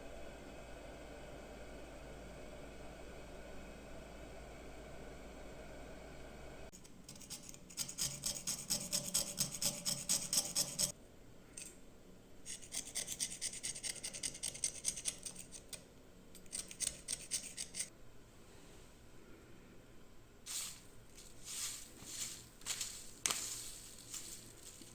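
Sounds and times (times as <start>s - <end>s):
tool scraping metal knife: 6.8s - 10.9s, 12.5s - 15.8s, 16.4s - 17.9s.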